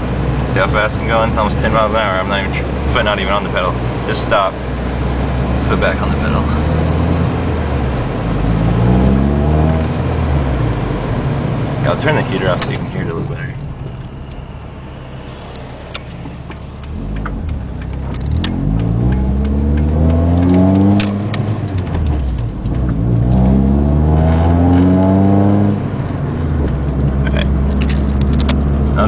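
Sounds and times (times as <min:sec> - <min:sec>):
car engine revving through gears: 0:00.0 - 0:29.0.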